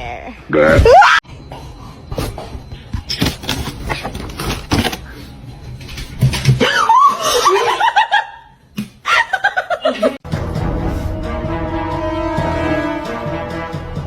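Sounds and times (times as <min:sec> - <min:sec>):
person laughing hard: 0:06.7 - 0:08.4.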